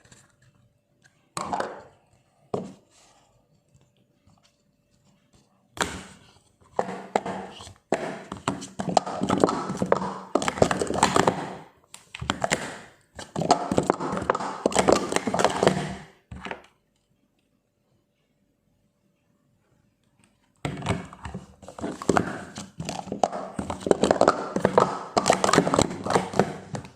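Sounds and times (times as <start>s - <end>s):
plastic cups clattering: 1.3s - 2.8s, 5.8s - 16.6s, 20.7s - 26.9s.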